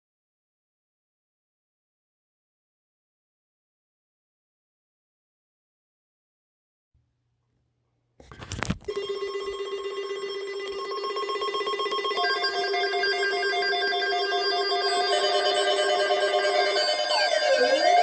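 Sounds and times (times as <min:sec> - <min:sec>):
higher pulsing beeping tone: 0:08.9 - 0:18.0.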